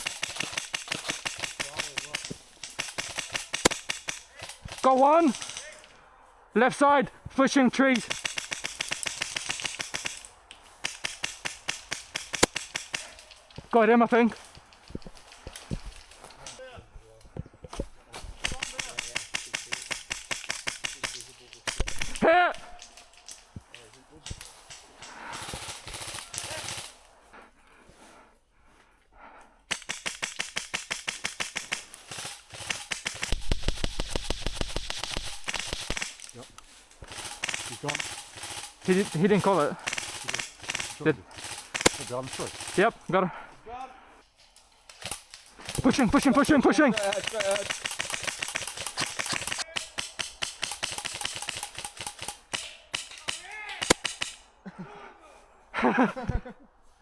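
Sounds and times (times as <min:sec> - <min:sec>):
airsoft gun rapid firing: 0:00.0 - 0:05.6, 0:07.9 - 0:13.2, 0:18.3 - 0:22.2, 0:25.2 - 0:27.0, 0:29.7 - 0:36.4, 0:37.0 - 0:42.9, 0:45.0 - 0:54.4.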